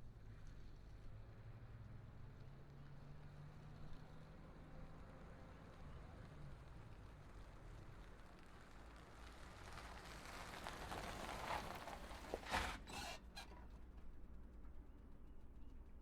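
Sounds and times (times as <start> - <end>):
tyre noise: 11.0 - 13.6.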